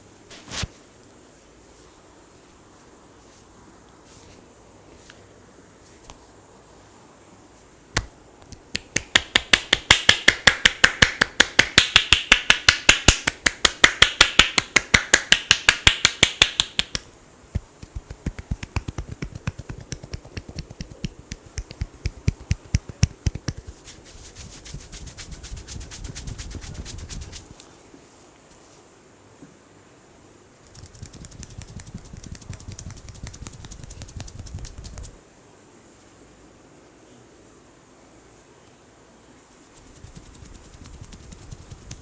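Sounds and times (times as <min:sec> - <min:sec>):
hands slapping a head: 0:08.0 - 0:27.6, 0:30.7 - 0:35.2, 0:39.9 - 0:42.0.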